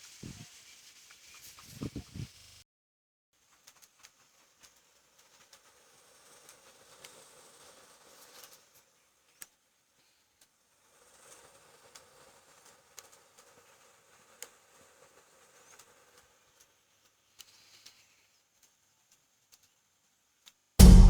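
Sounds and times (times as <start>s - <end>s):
faint clicks: 15.5s - 20.6s.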